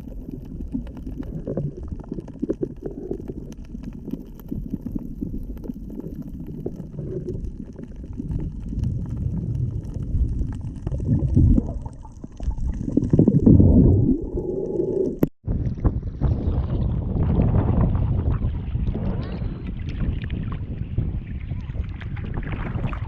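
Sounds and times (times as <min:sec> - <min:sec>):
muffled water sloshing: 0:00.0 - 0:23.0.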